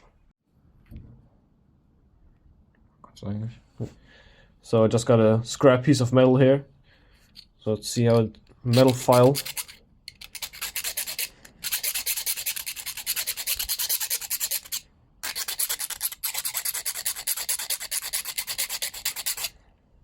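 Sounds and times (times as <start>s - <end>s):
file rasping across steel: 8.7s - 19.6s.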